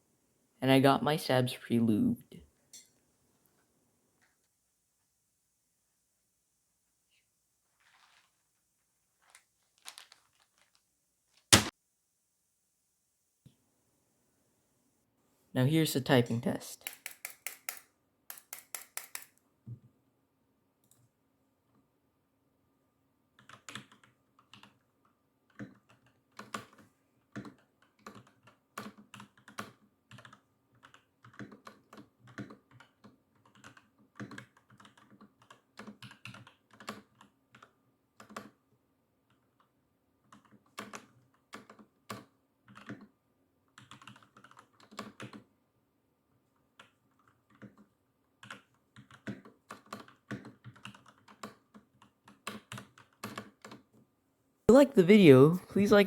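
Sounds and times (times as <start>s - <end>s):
mechanical keyboard typing: 23.4s - 24.8s, 27.4s - 38.6s, 40.3s - 43.1s, 43.8s - 45.5s, 46.8s - 53.8s.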